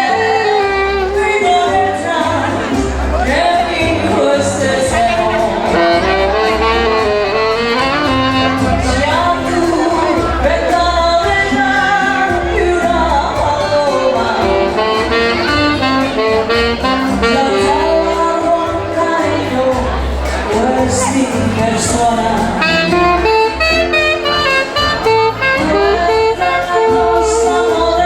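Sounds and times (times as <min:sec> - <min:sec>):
band music with wavering melody: 0:00.0 - 0:28.0.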